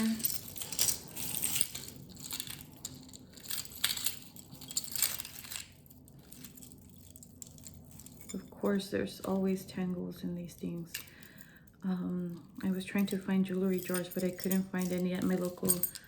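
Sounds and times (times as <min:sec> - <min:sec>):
jewelry clicking and rattling: 0:00.0 - 0:09.6, 0:10.6 - 0:16.0.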